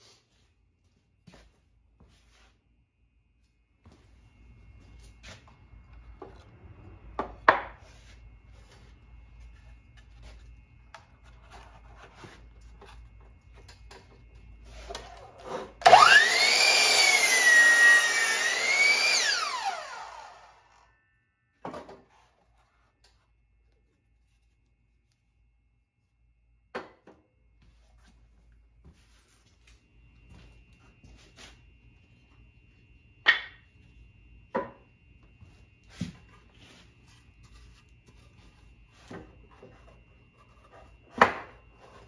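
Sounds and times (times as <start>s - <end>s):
electric saw cutting wood: 15.7s - 20.8s.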